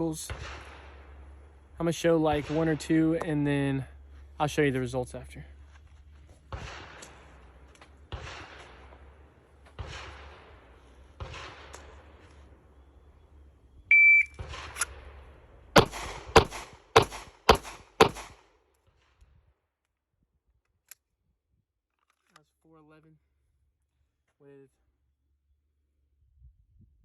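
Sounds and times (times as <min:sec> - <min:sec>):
muffled bangs: 0:00.0 - 0:13.4, 0:14.4 - 0:18.4
shot timer beep: 0:13.9 - 0:14.4
handgun shots: 0:15.8 - 0:18.4.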